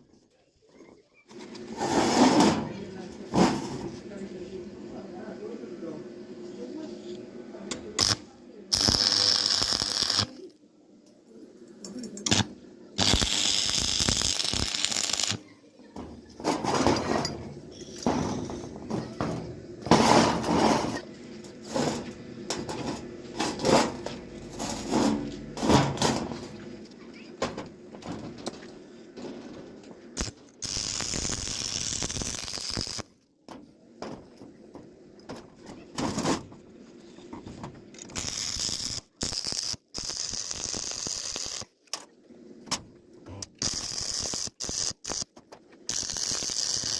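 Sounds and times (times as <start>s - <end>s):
harsh hissing power tool: 8.0s - 10.4s, 12.3s - 15.4s, 30.2s - 33.1s, 38.2s - 41.7s, 43.6s - 45.2s, 45.9s - 46.9s
metal parts clanking: 16.4s - 21.0s.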